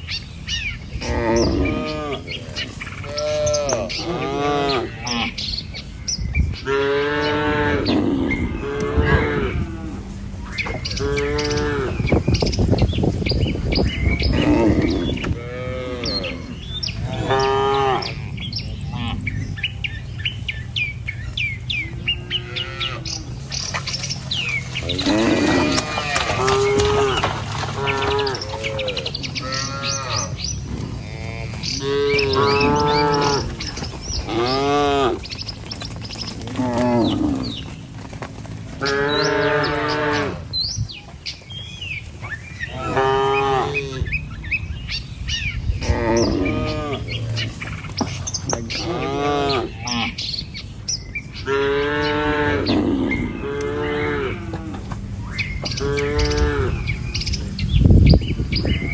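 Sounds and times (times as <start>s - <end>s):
cattle mooing: 0.9s - 5.5s, 6.6s - 12.2s, 14.0s - 19.9s, 21.7s - 35.4s, 36.4s - 37.7s, 38.8s - 40.6s, 42.6s - 44.2s, 45.8s - 47.6s, 48.5s - 50.2s, 51.4s - 57.5s.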